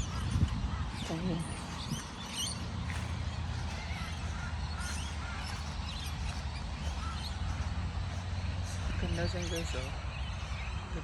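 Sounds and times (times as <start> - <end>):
birds calling: 0.0 - 11.0.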